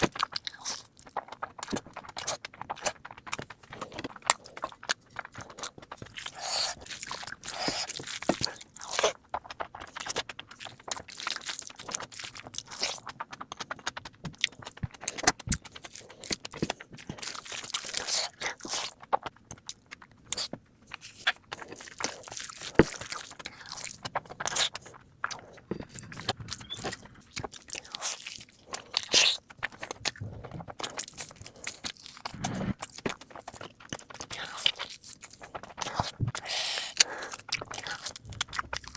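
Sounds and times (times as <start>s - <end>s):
chewing and crunching food: 0.0s - 38.9s.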